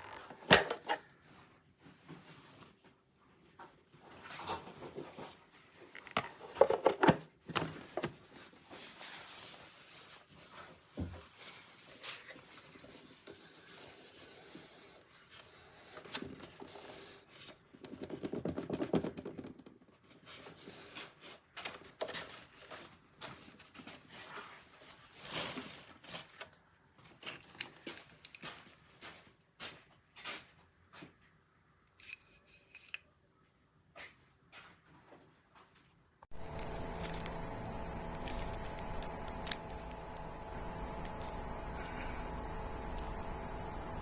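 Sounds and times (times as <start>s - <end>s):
rustling and scraping handling: 0.0s - 31.2s, 31.9s - 33.2s, 34.0s - 44.0s
handling rubbing and scraping: 36.3s - 44.0s.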